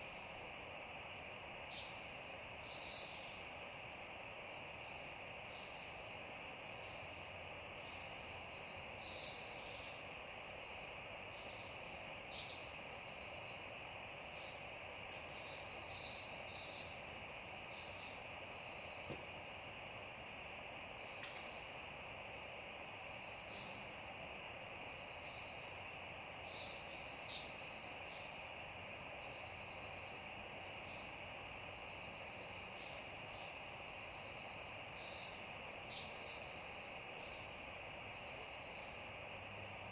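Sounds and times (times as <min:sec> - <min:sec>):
background hiss: 0:00.0 - 0:39.9
insect chirps: 0:00.0 - 0:39.9
insects trilling: 0:00.0 - 0:39.9.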